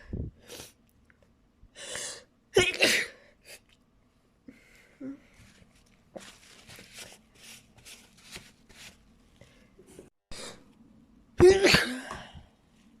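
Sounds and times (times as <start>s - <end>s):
person sneezing: 11.4s - 12.4s.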